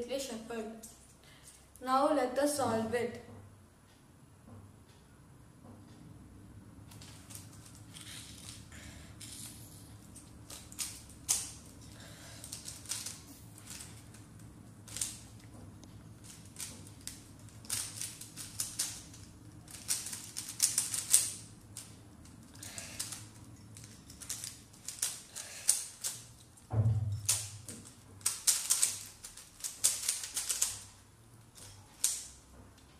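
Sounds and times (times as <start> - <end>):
puzzle cube plastic clicking: 16.2 - 21.9, 28.2 - 30.8.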